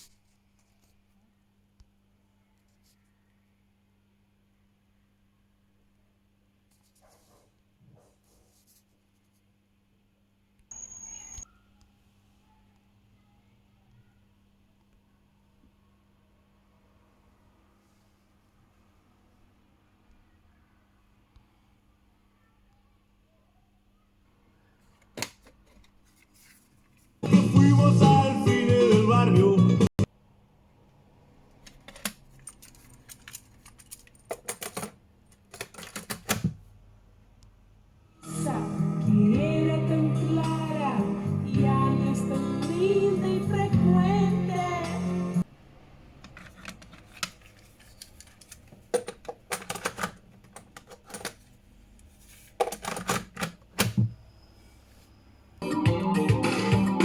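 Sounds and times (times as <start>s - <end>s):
plastic cassette clicks and clacks: 31.5s - 36.5s, 46.2s - 51.4s.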